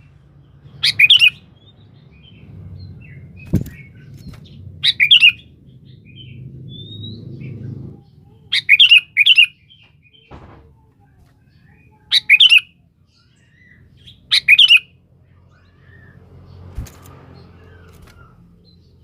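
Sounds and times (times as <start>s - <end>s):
bulbul calling: 0.8s - 1.4s, 13.6s - 14.9s
short knock: 10.3s - 10.8s.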